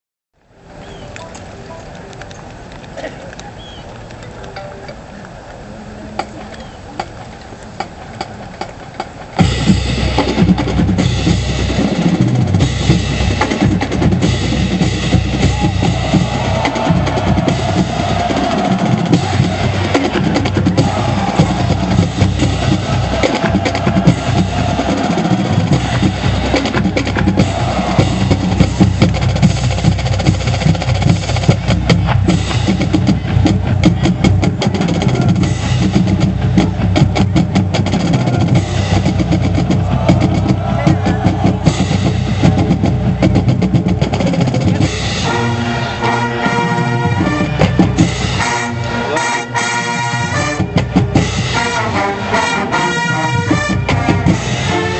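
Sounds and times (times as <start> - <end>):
marching band playing: 5.9 - 54.9
snare drum rolls: 7.8 - 48.8
bass drums: 9.4 - 45.6, 47.0 - 48.8, 50.2 - 52.4, 53.3 - 54.9.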